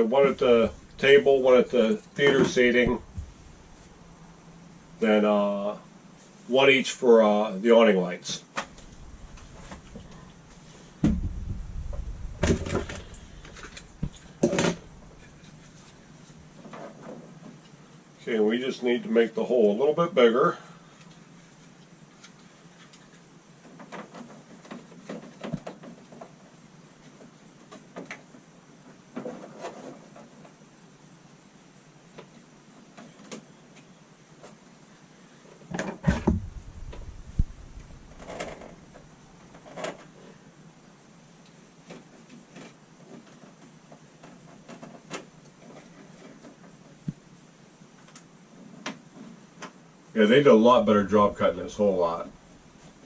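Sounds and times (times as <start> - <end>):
faint scraping on wall panel: 8.6 - 17.4
dull knock: 11.0 - 13.0, 36.1 - 37.8.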